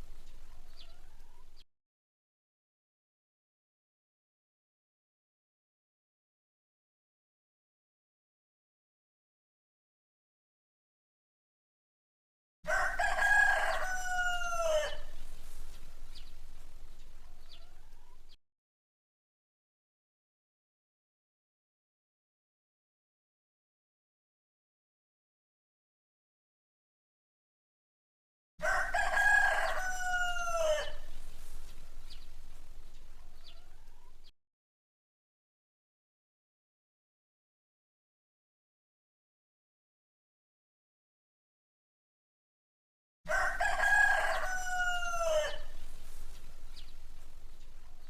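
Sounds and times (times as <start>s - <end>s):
rooster crowing: 12.7s - 18.1s, 28.6s - 34.2s, 43.3s - 48.0s.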